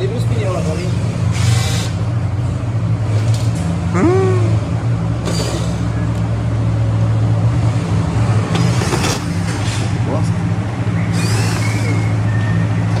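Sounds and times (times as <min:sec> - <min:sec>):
low mechanical drone: 0:00.0 - 0:13.0
rising squeak: 0:11.0 - 0:13.0.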